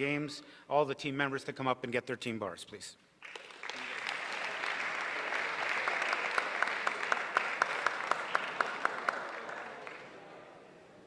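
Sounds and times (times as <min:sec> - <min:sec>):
sharp rhythmic claps: 0:03.2 - 0:10.2
audience applauding: 0:03.2 - 0:10.5.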